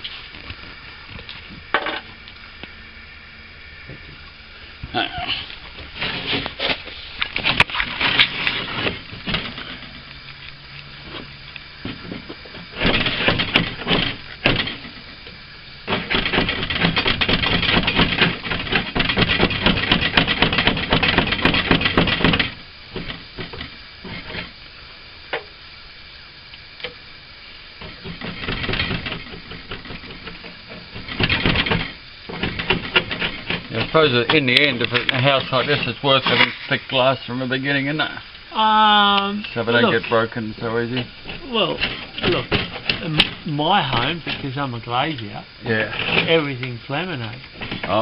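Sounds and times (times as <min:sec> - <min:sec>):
sharp cracks and knocks: 0:05.7 - 0:24.6, 0:27.8 - 0:35.2
tool scraping on wood: 0:05.8 - 0:09.8, 0:27.8 - 0:36.8, 0:45.8 - 0:46.5.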